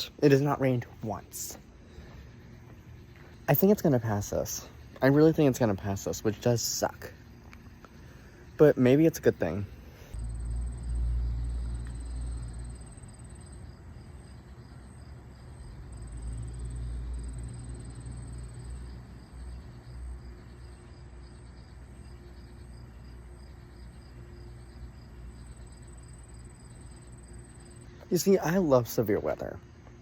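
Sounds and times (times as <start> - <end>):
crickets chirping: 0.0 - 30.0
low rumble: 10.2 - 13.0.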